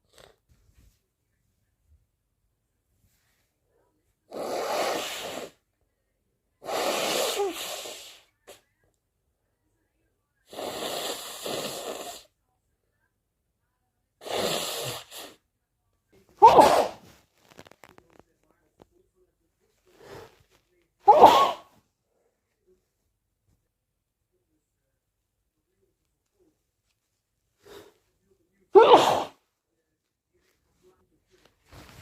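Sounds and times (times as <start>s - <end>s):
person sneezing: 4.3s - 5.6s, 6.6s - 8.2s, 16.4s - 17.2s, 21.0s - 21.8s, 28.7s - 29.4s.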